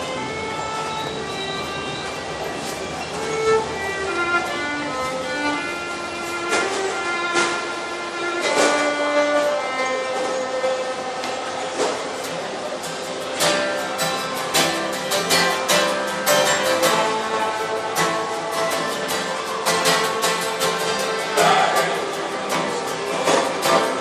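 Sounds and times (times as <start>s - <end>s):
acoustic folk band playing: 0.0s - 24.0s
strummed guitar: 0.0s - 24.0s.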